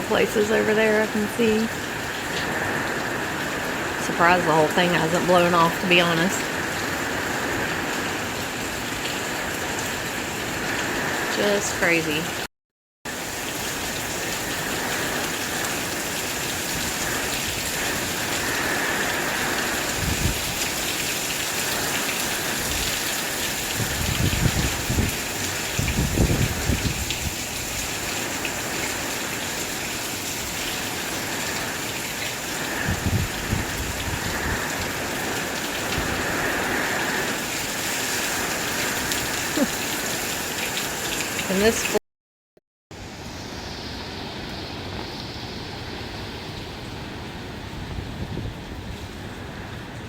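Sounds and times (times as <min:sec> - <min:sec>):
heavy rain pouring: 0:00.0 - 0:12.5, 0:13.1 - 0:42.0
wind buffeting microphone: 0:16.6 - 0:21.0, 0:21.7 - 0:28.7, 0:32.5 - 0:39.5, 0:47.5 - 0:49.8.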